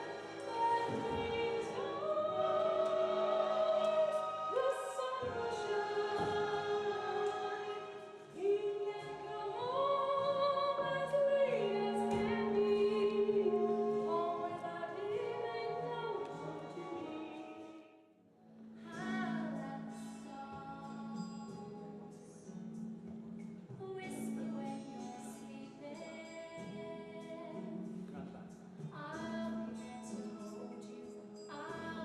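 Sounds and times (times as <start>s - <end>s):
voices singing in harmony: 0.0s - 17.8s.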